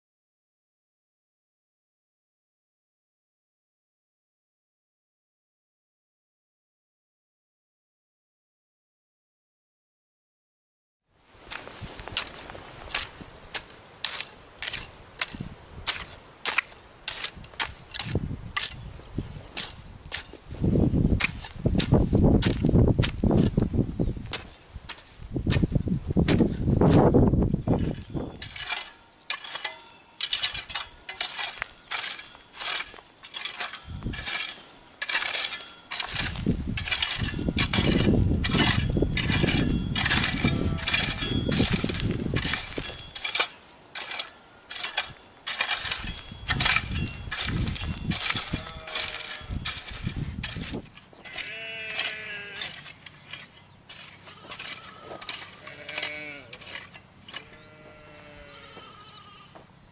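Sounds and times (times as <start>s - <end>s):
sheep bleating: 40.4s - 41.2s, 48.4s - 49.6s, 51.3s - 52.7s, 54.3s - 56.6s, 57.4s - 59.6s.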